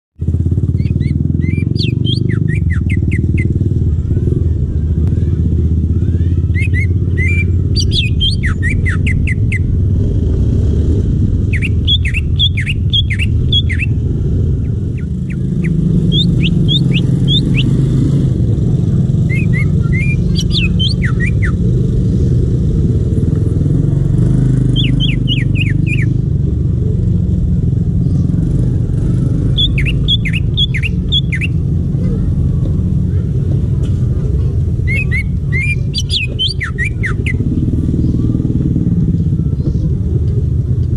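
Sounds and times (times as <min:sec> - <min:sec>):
loud low motor rumble: 0:00.2 - 0:40.9
bird chirping rapidly: 0:00.6 - 0:03.8, 0:06.2 - 0:09.9, 0:10.9 - 0:23.4, 0:24.2 - 0:26.6, 0:28.0 - 0:31.8, 0:34.7 - 0:38.8.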